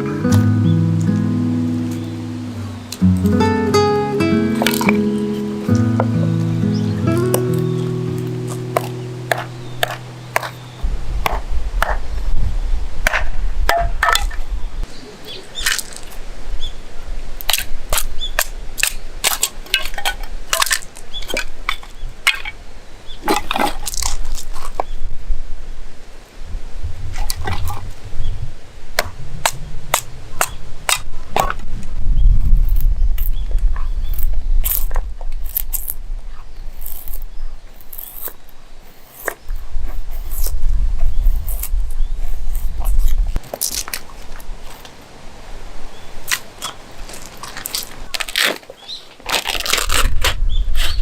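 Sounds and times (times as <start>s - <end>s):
campfire wood cracking: 4.4s - 12.3s, 15.5s - 16.3s, 17.4s - 22.6s, 23.2s - 24.8s, 28.9s - 36.0s, 36.7s - 45.2s, 46.2s - 51.0s
low rumble: 7.6s - 14.8s, 28.0s - 33.2s.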